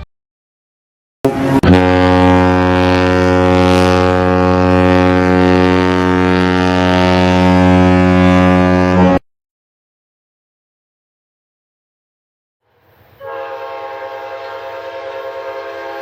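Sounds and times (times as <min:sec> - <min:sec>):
deep horn blast: 0:01.2 - 0:09.2.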